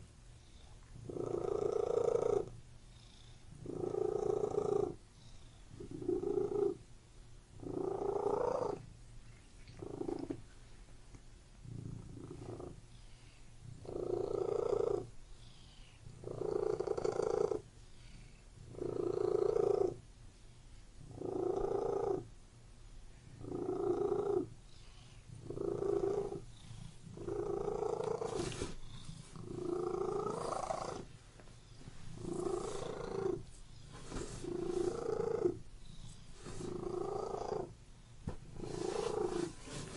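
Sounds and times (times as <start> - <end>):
cat purring: 0.0 - 6.9, 7.5 - 10.6, 11.6 - 20.0, 21.0 - 22.3, 23.3 - 37.8, 38.5 - 39.9.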